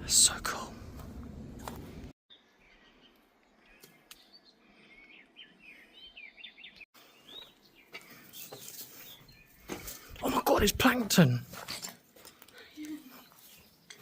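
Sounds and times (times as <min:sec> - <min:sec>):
small birds chirping: 0:02.3 - 0:10.3, 0:12.3 - 0:14.0.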